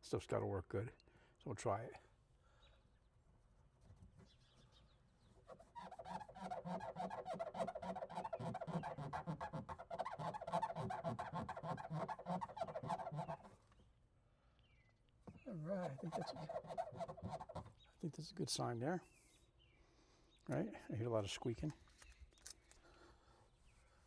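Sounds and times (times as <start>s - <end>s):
wipe squeaking on window glass: 5.4s - 13.6s, 15.3s - 17.9s.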